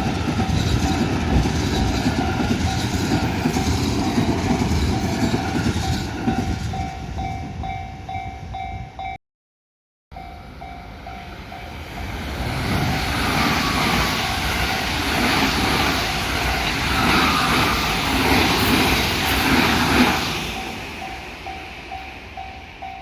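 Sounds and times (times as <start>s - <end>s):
train passing: 0.0s - 9.2s, 10.2s - 23.0s
level crossing warning bell: 4.9s - 9.2s, 10.1s - 12.1s, 20.5s - 23.0s.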